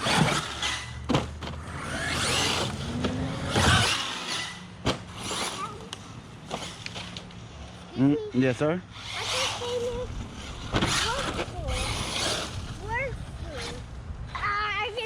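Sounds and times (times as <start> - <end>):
electric motor whining: 0.0 - 7.2.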